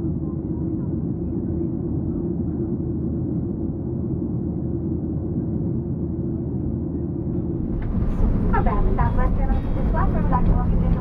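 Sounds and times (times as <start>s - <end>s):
airliner cabin rumble: 7.5s - 11.0s.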